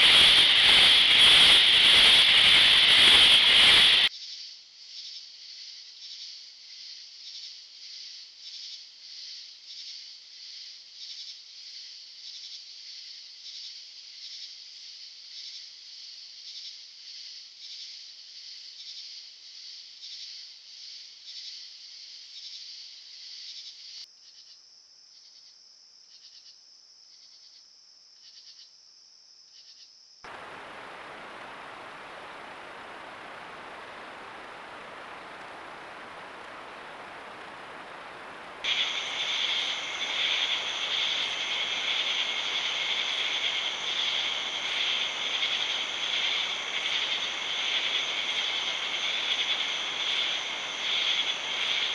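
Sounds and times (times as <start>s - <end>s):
even hiss: 0.0s - 4.1s, 30.3s - 51.9s
pulsing insect chorus: 0.0s - 24.0s, 30.3s - 51.9s
steady high insect trill: 0.0s - 51.9s.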